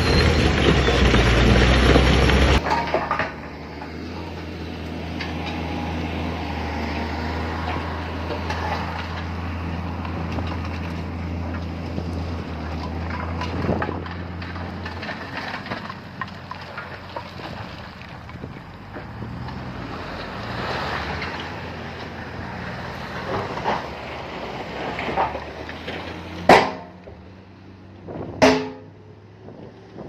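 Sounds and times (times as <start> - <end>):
clanks and knocks: 0.0 - 4.4, 12.7 - 19.6, 24.9 - 27.2, 28.1 - 28.9
heavy machinery diesel engine: 0.0 - 30.0.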